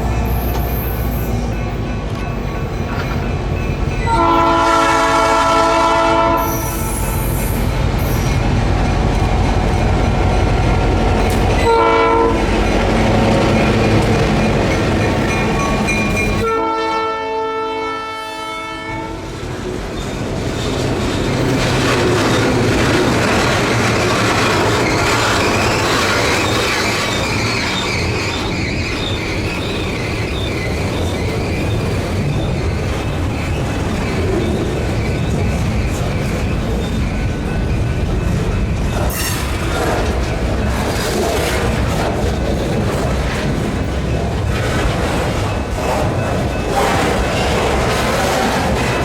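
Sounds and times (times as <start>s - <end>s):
diesel locomotive engine running: 0.0s - 16.5s
train wheels clattering on rails: 0.0s - 16.6s, 19.2s - 49.0s
locomotive horn blasts: 4.0s - 7.4s, 11.6s - 12.5s, 16.4s - 19.3s.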